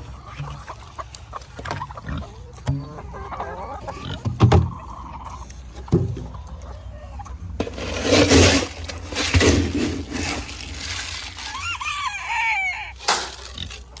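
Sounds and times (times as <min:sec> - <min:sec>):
chickens clucking and squawking: 0:00.0 - 0:14.0
rustling noise: 0:07.6 - 0:12.1.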